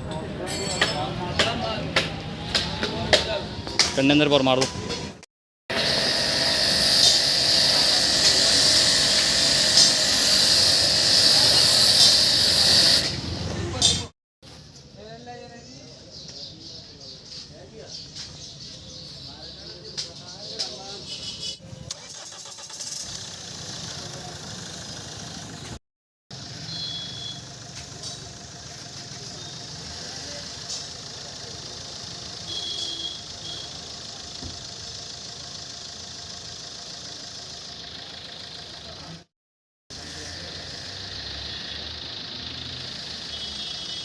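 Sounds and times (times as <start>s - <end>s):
hiss: 5.7s - 13.2s
pressure washer spraying water: 5.7s - 13.3s
engine running steadily: 5.7s - 14.0s, 26.4s - 39.3s.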